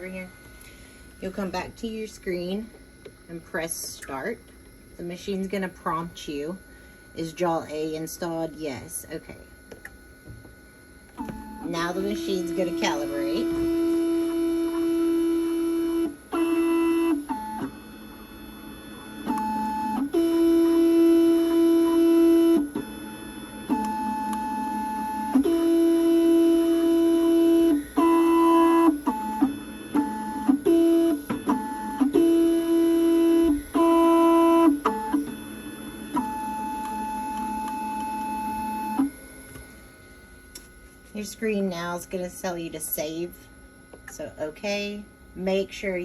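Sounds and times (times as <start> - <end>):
machine motors whining: 11.1 - 39.6.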